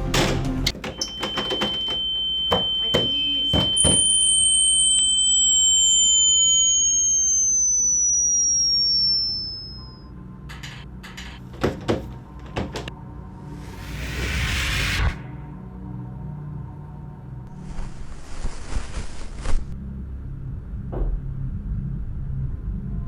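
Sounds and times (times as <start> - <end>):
steady high electronic tone: 0.7 - 10.1, 13.2 - 16.0
low hum: 0.8 - 23.0
higher tone gliding down: 3.1 - 10.0.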